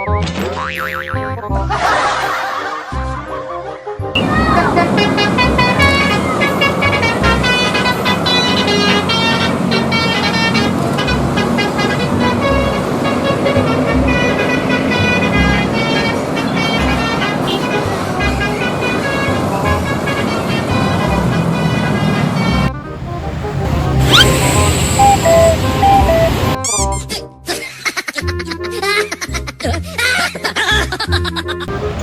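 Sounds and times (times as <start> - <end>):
music: 0.0 - 32.0
multi-tone bus horn tune: 4.2 - 26.7
traffic noise: 4.2 - 26.7, 31.6 - 32.0.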